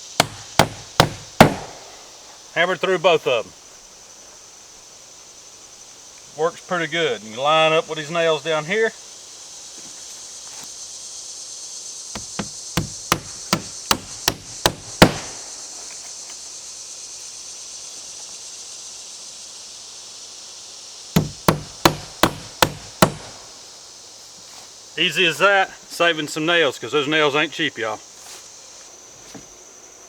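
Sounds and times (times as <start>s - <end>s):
insect chirring: 0.0s - 30.0s
hammer striking nails into wood: 0.1s - 2.0s, 12.2s - 15.4s, 21.2s - 23.4s.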